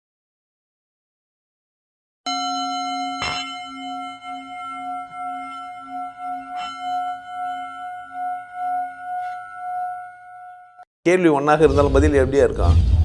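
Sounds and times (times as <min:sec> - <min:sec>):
singing bowl ringing: 0:02.3 - 0:10.9.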